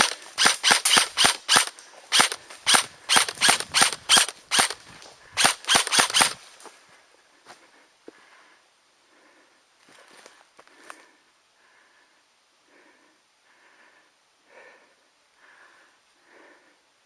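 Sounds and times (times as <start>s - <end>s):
airsoft gun firing: 0.0s - 4.8s, 5.4s - 6.4s.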